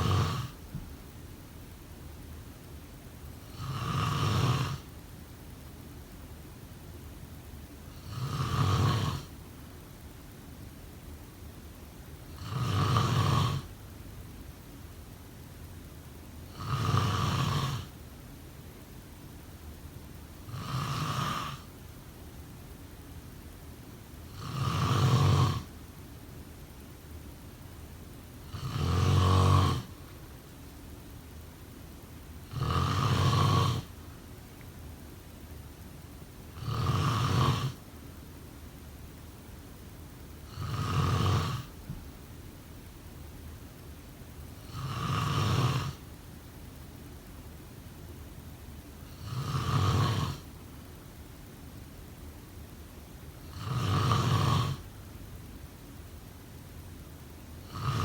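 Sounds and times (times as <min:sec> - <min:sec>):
person snoring: 0:00.0 - 0:00.6, 0:03.4 - 0:04.9, 0:08.0 - 0:09.3, 0:12.3 - 0:13.7, 0:16.5 - 0:17.9, 0:20.5 - 0:21.7, 0:24.3 - 0:25.7, 0:28.4 - 0:30.0, 0:32.5 - 0:33.9, 0:36.5 - 0:37.8, 0:40.5 - 0:41.8, 0:44.6 - 0:46.0, 0:49.1 - 0:50.5, 0:53.5 - 0:54.8, 0:57.6 - 0:58.0
faint steady hiss: 0:00.0 - 0:58.0.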